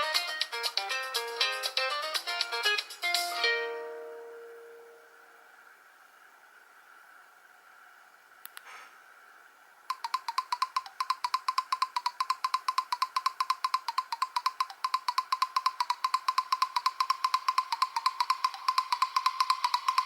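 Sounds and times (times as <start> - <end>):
faint hiss: 0.0 - 9.9
soft clicks: 8.4 - 8.7.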